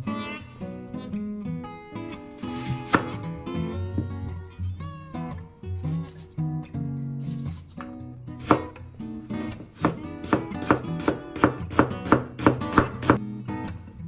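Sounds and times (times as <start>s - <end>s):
guitar music: 0.0s - 14.0s
knife chopping on cutting board: 2.8s - 3.2s, 8.4s - 8.8s, 9.8s - 13.2s.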